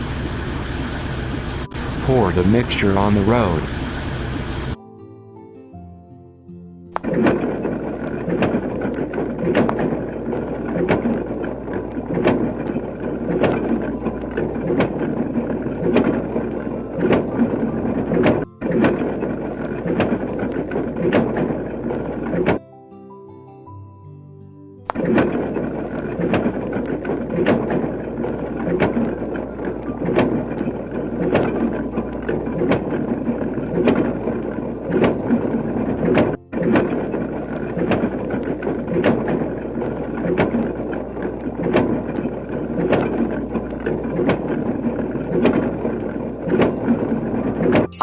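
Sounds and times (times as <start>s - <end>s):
machine rumbling: 0.0s - 4.8s, 7.0s - 22.6s, 24.9s - 48.0s.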